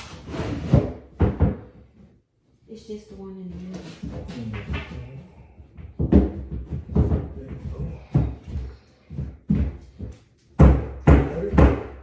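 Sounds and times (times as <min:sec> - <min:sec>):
knocks on furniture panels: 0:00.6 - 0:01.8, 0:05.6 - 0:12.0.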